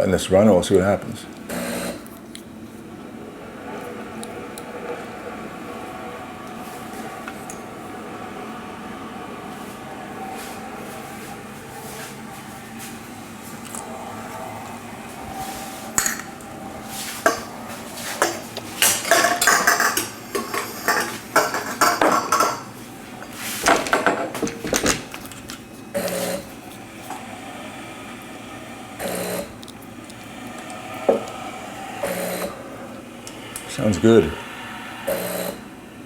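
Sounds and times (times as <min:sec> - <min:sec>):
water pump buzzing: 0:01.5 - 0:02.2, 0:05.4 - 0:36.0
metal objects clattering: 0:18.2 - 0:22.8.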